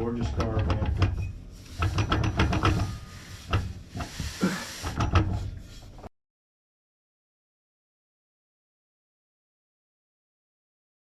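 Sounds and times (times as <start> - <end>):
objects knocking and clattering: 0.0 - 6.0.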